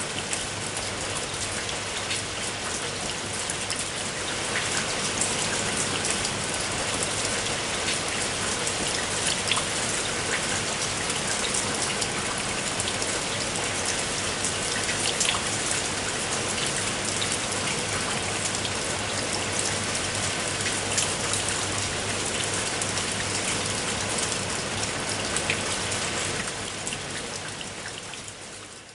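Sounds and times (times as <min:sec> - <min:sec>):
rain falling on a surface: 0:00.0 - 0:28.9.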